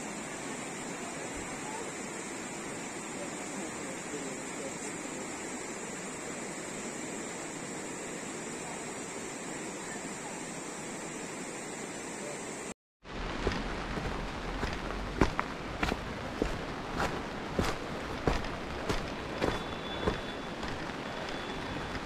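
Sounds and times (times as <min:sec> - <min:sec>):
rushing water: 0:13.1 - 0:22.0.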